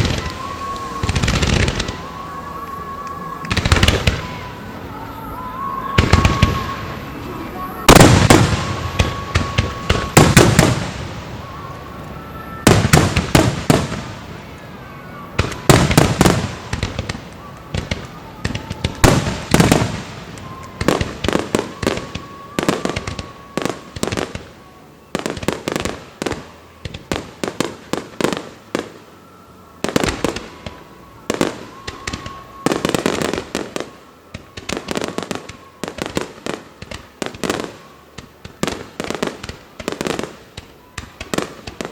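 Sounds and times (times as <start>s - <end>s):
fireworks booming: 0.0s - 29.1s.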